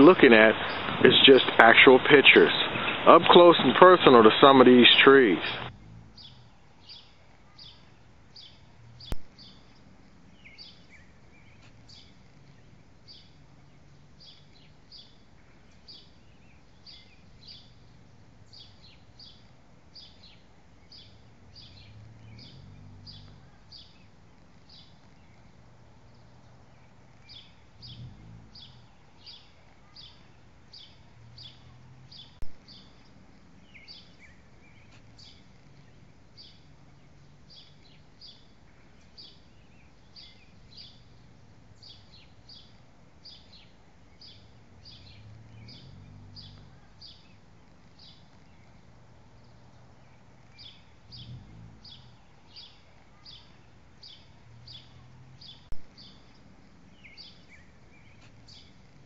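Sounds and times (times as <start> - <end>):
bird chirping: 0.0 - 59.0
faint low rumble: 0.0 - 59.0.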